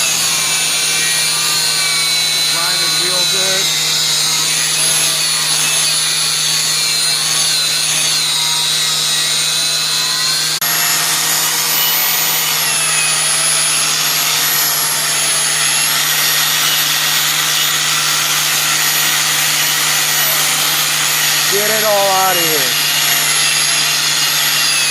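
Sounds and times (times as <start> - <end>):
power grinder grinding metal: 0.0 - 24.9.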